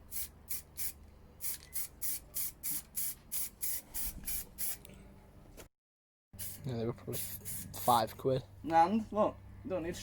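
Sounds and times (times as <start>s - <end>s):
spray can hissing bursts: 0.1s - 4.8s, 6.4s - 8.1s.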